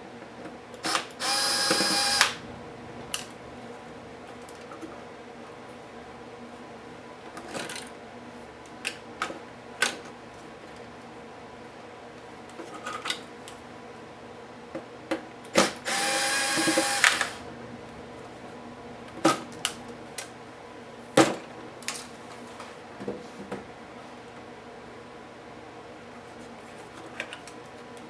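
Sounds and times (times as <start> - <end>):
small electric motor whirring: 0.9 - 3.4, 15.8 - 17.6.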